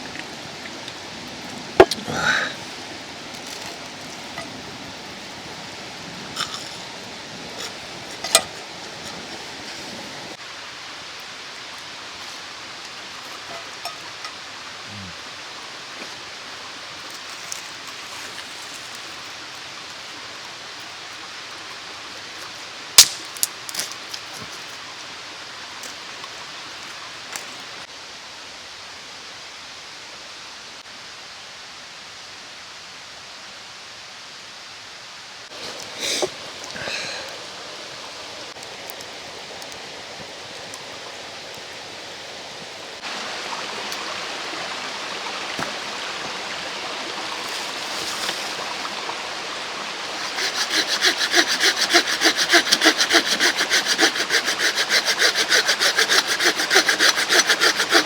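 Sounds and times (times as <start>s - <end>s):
handling rustle: 0.0s - 10.3s
mountain stream rushing: 0.0s - 28.0s, 35.2s - 58.0s
hand saw cutting wood: 6.4s - 6.8s, 7.5s - 9.2s, 50.0s - 58.0s.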